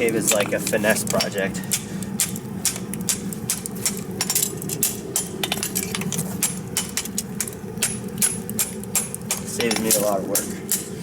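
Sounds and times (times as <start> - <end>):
steady low hum: 0.0 - 11.0
hammer tapping on horseshoe: 6.4 - 10.9.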